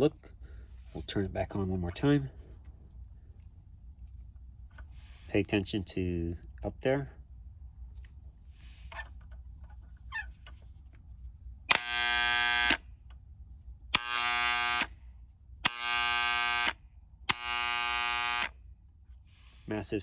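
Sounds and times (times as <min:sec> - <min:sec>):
solenoid clicking and buzzing: 0:11.7 - 0:13.2, 0:13.9 - 0:14.9, 0:15.6 - 0:18.6.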